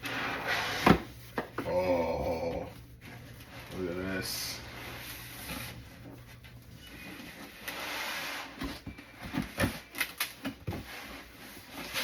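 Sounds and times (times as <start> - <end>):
cardboard and plastic rustling: 2.5 - 12.0.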